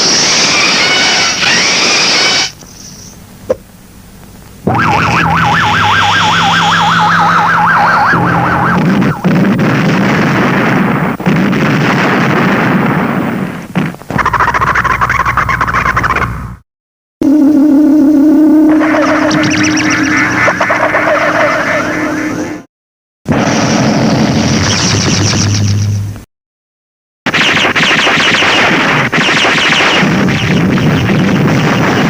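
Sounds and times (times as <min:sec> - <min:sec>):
warbling electronic tone: 0:04.6 - 0:10.6, 0:17.2 - 0:22.7
low rumble: 0:04.6 - 0:11.2
rushing noise: 0:04.6 - 0:11.4, 0:18.7 - 0:22.6
burst of noise: 0:04.6 - 0:14.0.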